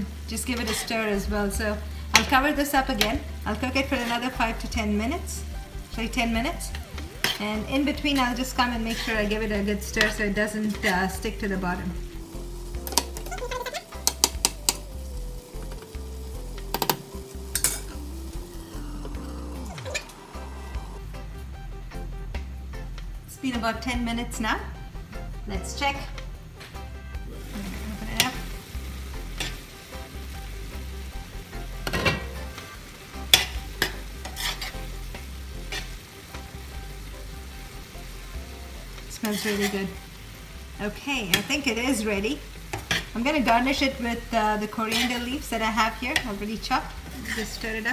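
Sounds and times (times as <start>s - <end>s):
faint sizzle: 0.0s - 47.9s
spoon scraping and knocking pan: 0.5s - 18.0s, 27.5s - 29.7s, 31.6s - 36.5s, 39.0s - 40.1s, 41.3s - 42.0s, 42.6s - 47.9s.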